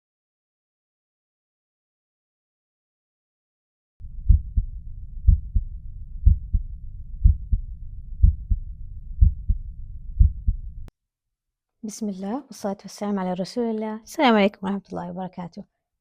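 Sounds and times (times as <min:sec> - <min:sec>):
low rushing noise: 0:04.0 - 0:10.9
heartbeat: 0:04.1 - 0:10.9.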